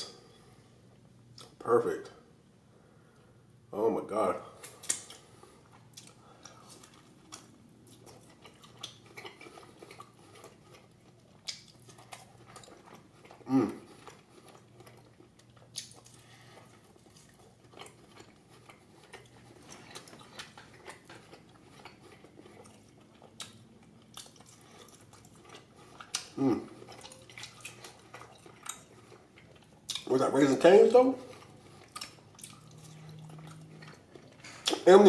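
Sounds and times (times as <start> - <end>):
person humming: 13.5 - 13.8.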